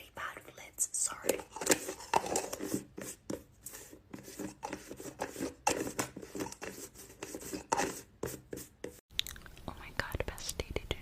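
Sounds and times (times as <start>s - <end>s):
lids clicking and scraping: 1.3s - 3.4s, 4.2s - 8.0s.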